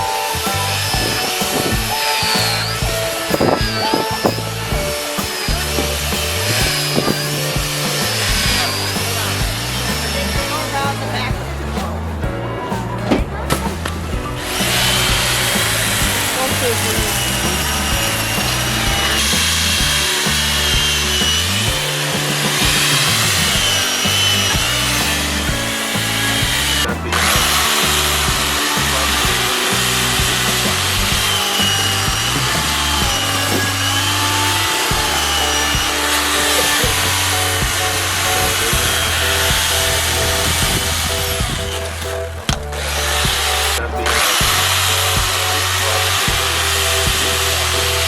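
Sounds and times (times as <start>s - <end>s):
power tool cutting ice: 0.0s - 11.3s, 13.5s - 48.0s.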